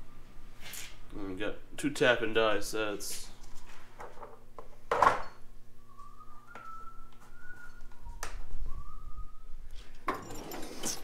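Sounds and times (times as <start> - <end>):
person whistling softly: 5.8 - 10.0
metal tools clattering: 10.1 - 11.0.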